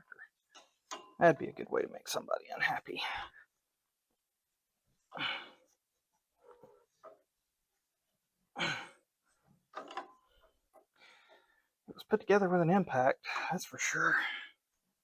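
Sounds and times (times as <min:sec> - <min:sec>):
faint rustles and knocks: 0:05.7 - 0:08.3.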